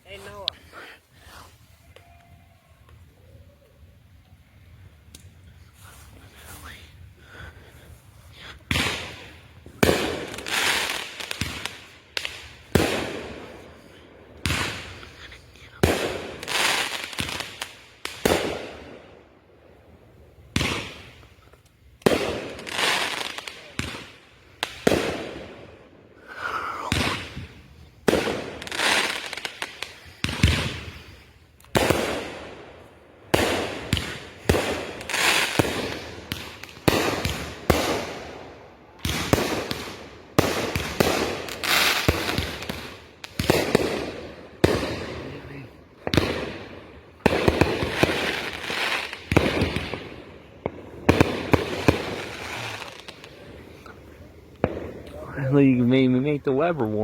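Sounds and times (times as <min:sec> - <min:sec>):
fireworks bangs: 0:08.4 - 0:19.2, 0:20.4 - 0:21.4, 0:22.0 - 0:57.0.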